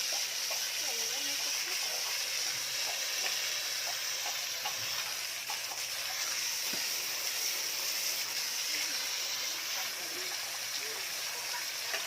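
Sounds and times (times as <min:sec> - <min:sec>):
water spraying hiss: 0:00.0 - 0:12.0.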